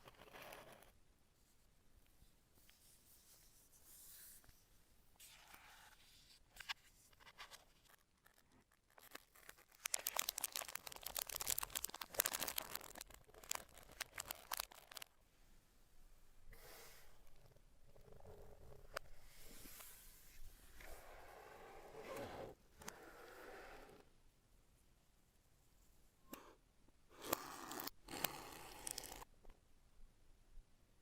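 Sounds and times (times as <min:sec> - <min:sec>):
rustling handling sounds: 0:06.6 - 0:15.2.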